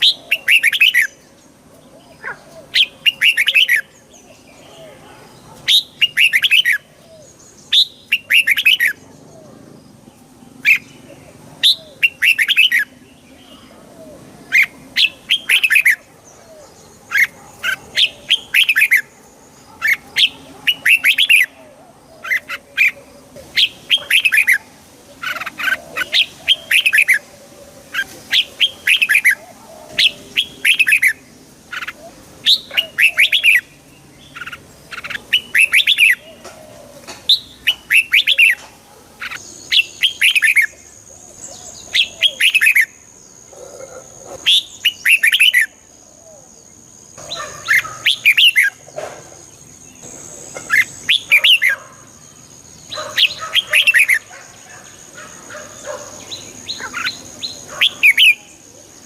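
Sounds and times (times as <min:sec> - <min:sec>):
bulbul singing warbled phrases: 0:00.0 - 0:59.0.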